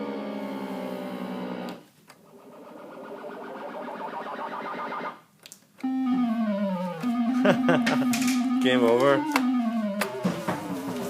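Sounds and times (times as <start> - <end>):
buzzy synthesiser tone: 0.0 - 5.2, 5.8 - 11.0
lower tone stepping down in pitch: 0.0 - 5.2, 5.8 - 11.0
rising synthesiser sweep: 2.2 - 5.2, 5.9 - 10.9.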